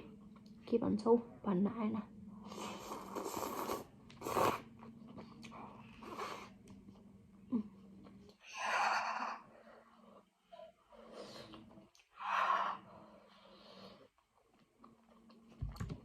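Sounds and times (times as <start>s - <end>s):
slurping noodle soup: 2.4s - 6.6s.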